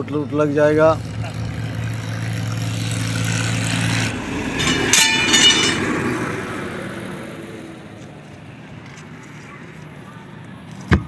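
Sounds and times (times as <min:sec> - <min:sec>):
vehicle passing by: 0:00.0 - 0:10.8
high metallic squeal: 0:00.8 - 0:06.6.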